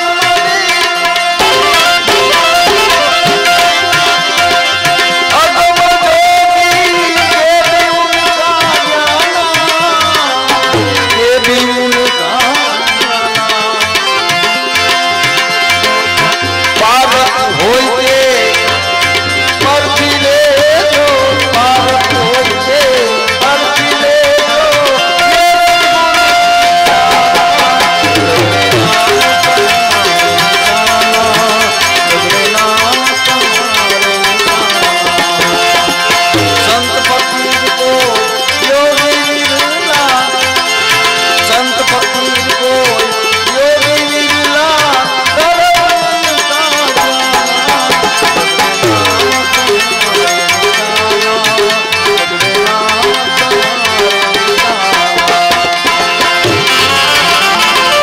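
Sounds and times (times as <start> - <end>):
tabla playing steady beat: 0.0 - 58.0
wavering melody line: 14.2 - 38.6.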